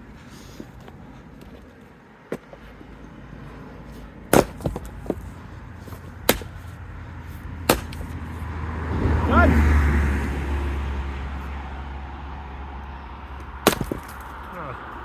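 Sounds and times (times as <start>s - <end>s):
axe chopping firewood: 4.3s - 8.6s, 13.4s - 14.6s.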